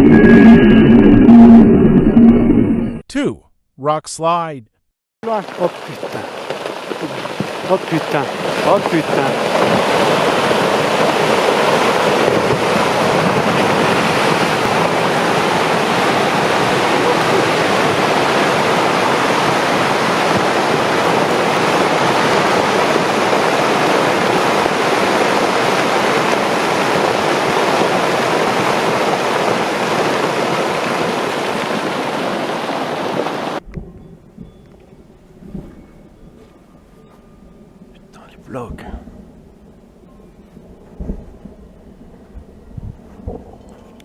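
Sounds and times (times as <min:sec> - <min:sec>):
rockslide roar: 0:00.0 - 0:02.9, 0:05.2 - 0:33.6.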